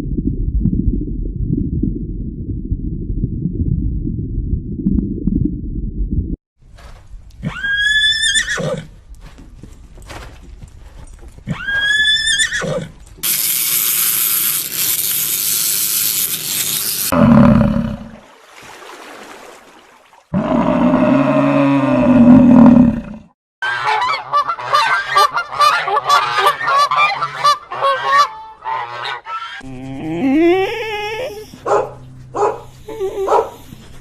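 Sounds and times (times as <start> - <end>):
low rumbling noise: 0.0 - 6.4
horse whinnying: 7.4 - 8.9, 11.5 - 13.0.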